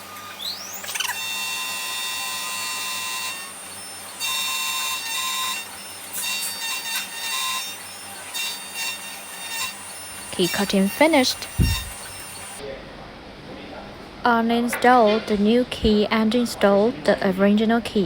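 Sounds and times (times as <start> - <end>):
key cutting machine whine: 0.0 - 12.6.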